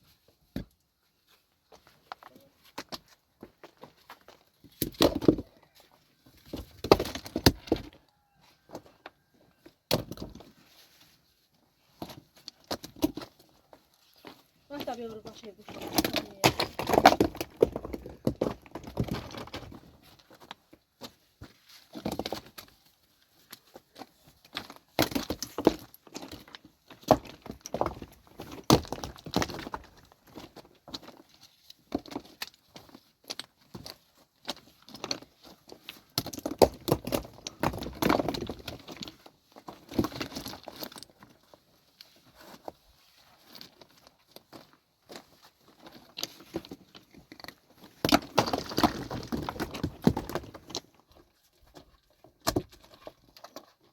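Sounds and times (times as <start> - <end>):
hard objects clattering and clinking: 43.5 - 51.0.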